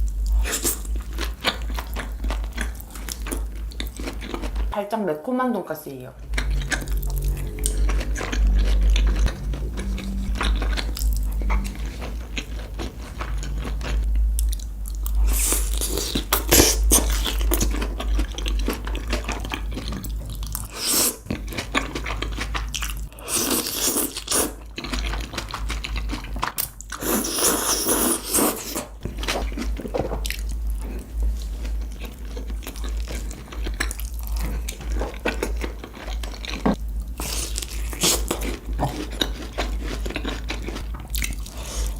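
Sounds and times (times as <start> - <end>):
crunching bites and chewing: 6.3 - 41.9.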